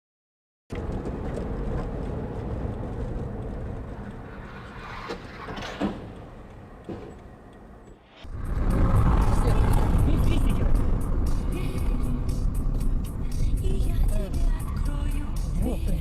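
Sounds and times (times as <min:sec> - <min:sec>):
road and engine rumble: 0:00.7 - 0:16.0.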